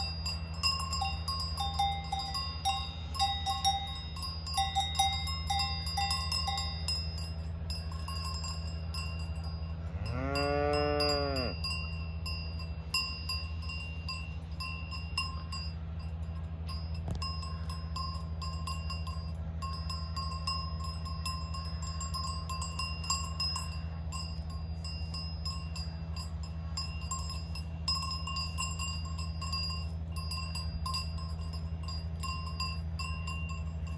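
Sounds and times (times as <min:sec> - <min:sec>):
cowbells clanking: 0:00.0 - 0:33.9
steady low hum: 0:00.0 - 0:33.9
cow mooing: 0:09.9 - 0:11.6.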